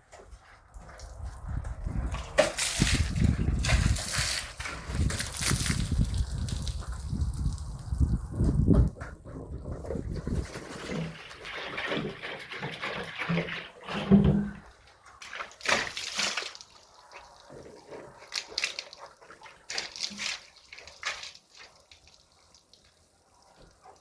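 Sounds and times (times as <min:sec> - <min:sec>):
water splashing and sloshing: 0:00.0 - 0:24.0
water dripping: 0:14.9 - 0:24.0.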